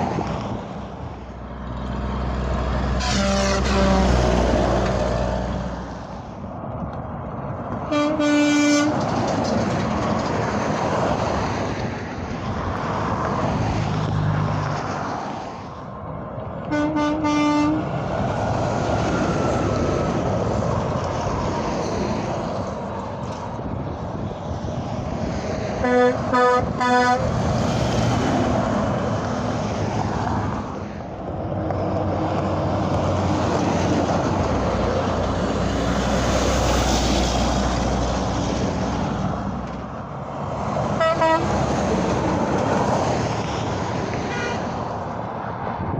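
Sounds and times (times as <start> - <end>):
highway traffic passing: 0.0 - 45.9
truck horns: 2.7 - 4.8, 7.8 - 9.1, 16.6 - 18.0, 25.8 - 27.4, 40.8 - 42.0, 44.2 - 44.8.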